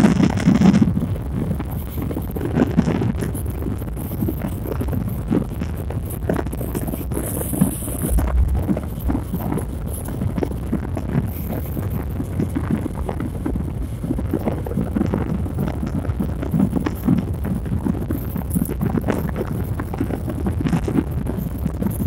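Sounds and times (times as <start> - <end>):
wind buffeting the microphone: 0.0 - 22.0
short wind thumps: 7.8 - 11.4.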